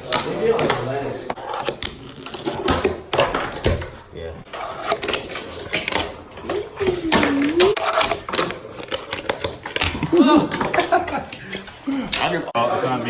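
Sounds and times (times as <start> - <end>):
skateboards clacking and rattling: 0.0 - 12.5.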